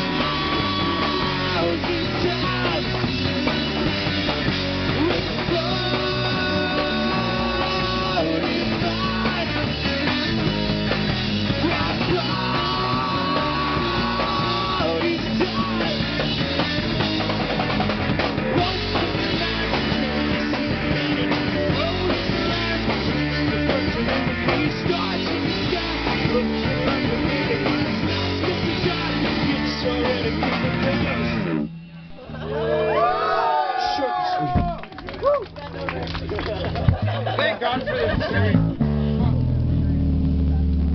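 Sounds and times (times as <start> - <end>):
person singing: 0.0 - 3.0, 4.9 - 10.5, 11.6 - 16.2, 18.4 - 31.4
drum kit: 0.0 - 32.3, 36.6 - 40.9
punk rock band playing live: 0.0 - 33.0, 34.6 - 40.9
electric guitar: 0.0 - 33.2, 34.5 - 40.9.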